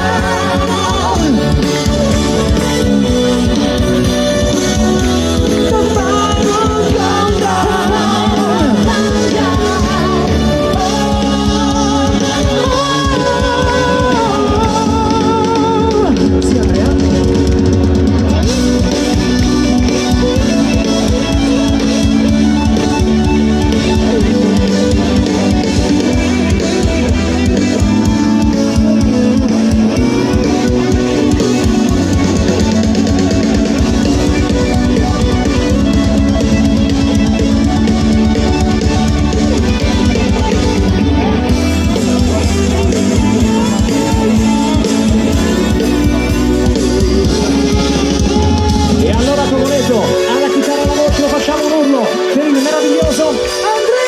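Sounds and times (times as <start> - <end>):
pop song with singing voice: 0.0 - 19.2, 39.8 - 54.0
drum kit beat: 0.0 - 52.0
band music: 0.0 - 54.0
electric guitar: 0.0 - 54.0.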